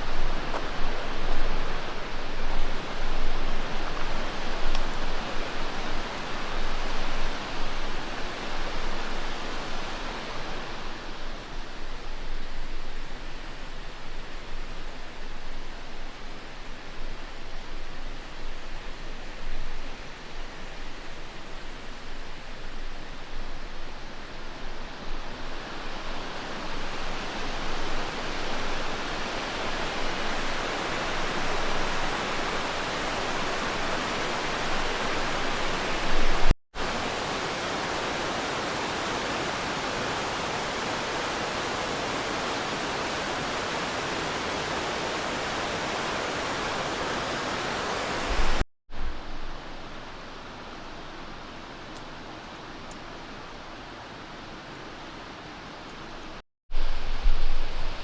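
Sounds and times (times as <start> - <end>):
water rushing over rocks: 0.0 - 15.3, 25.1 - 49.2.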